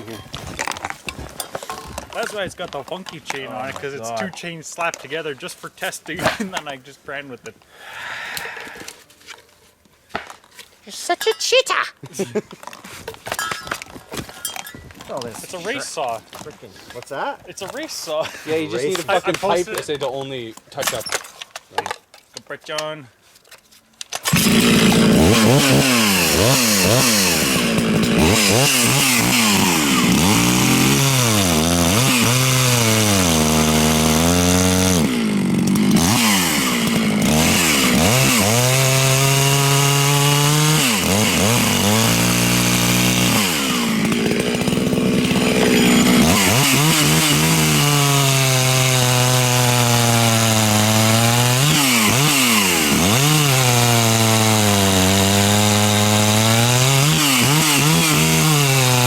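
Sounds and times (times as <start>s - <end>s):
chainsaw cutting through log: 24.2s - 59.0s.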